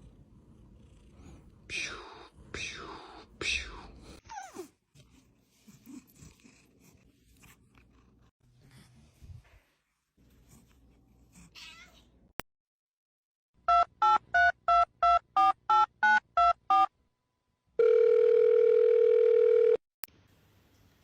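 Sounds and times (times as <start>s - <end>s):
telephone ringing tone: 17.8s - 19.8s.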